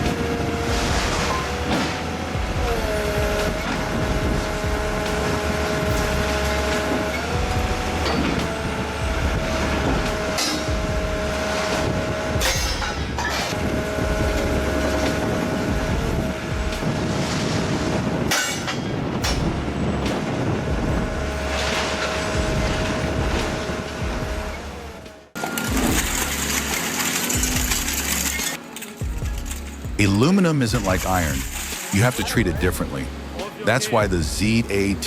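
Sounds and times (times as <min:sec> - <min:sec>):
hydraulic machinery whine and rumble: 0:00.0 - 0:35.0
sharp metal clanks: 0:11.7 - 0:13.7, 0:18.3 - 0:20.2.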